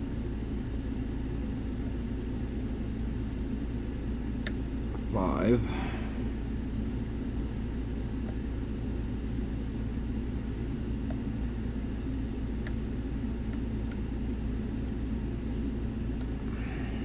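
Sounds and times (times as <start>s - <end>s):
steady low rumble: 16.1s - 17.0s.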